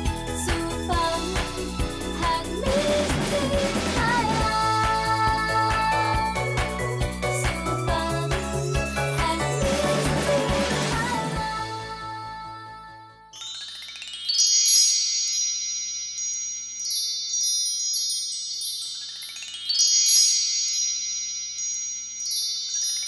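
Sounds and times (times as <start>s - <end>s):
backing music: 0.0s - 12.5s
shimmering wind chime sweep: 13.3s - 23.0s.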